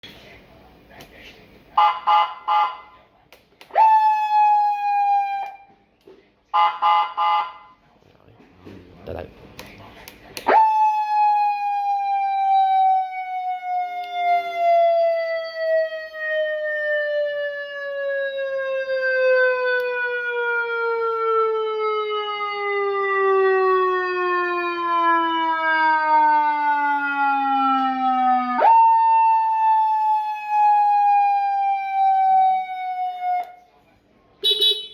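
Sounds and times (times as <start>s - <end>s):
police siren wailing: 3.7s - 5.8s, 10.5s - 33.8s.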